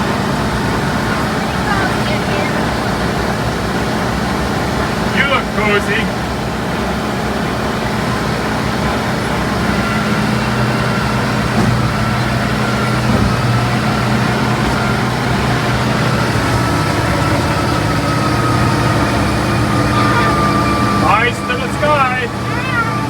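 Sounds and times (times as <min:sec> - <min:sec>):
bulldozer diesel engine under load: 0:00.0 - 0:23.0
thin high whine: 0:14.5 - 0:23.0.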